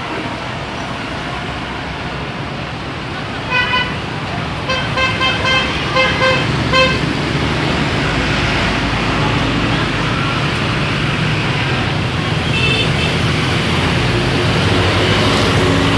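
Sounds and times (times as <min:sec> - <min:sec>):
bus engine: 0:00.0 - 0:15.9
road noise: 0:00.0 - 0:15.9
bus musical horn: 0:03.5 - 0:07.2, 0:11.5 - 0:13.3.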